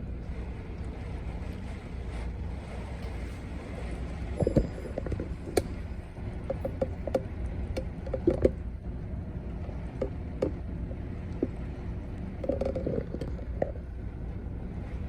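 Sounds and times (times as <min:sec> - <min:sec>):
wind: 0:00.0 - 0:15.0
sharp ticks and knocks: 0:06.5 - 0:08.6, 0:10.0 - 0:10.6.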